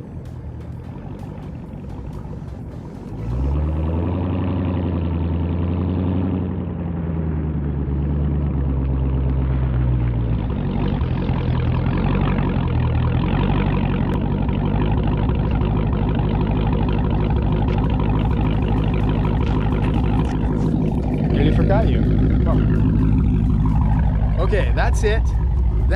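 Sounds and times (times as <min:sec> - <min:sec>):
car engine exhaust revving: 0:00.0 - 0:25.9.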